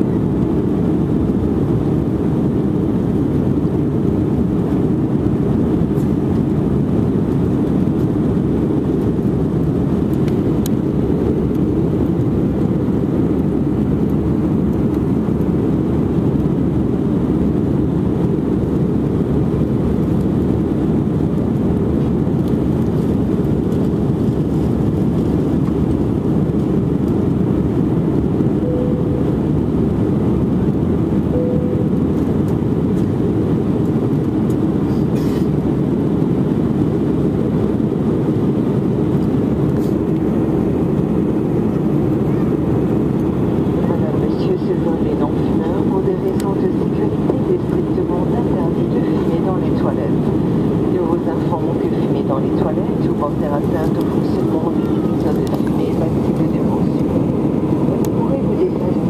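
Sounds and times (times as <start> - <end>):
airplane cabin engine rumble: 0.0 - 59.0
faint brief tone: 28.6 - 29.4, 31.4 - 32.1.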